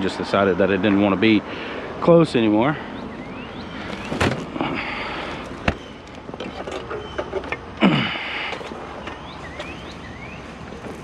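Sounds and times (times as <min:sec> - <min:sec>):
items knocking and scraping: 0:03.9 - 0:04.6, 0:05.6 - 0:07.7
person grunting: 0:07.8 - 0:08.3.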